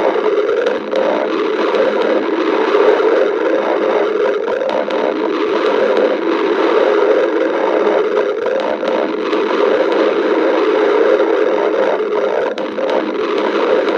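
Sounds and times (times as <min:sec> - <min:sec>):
stomach growling: 0:00.0 - 0:13.9.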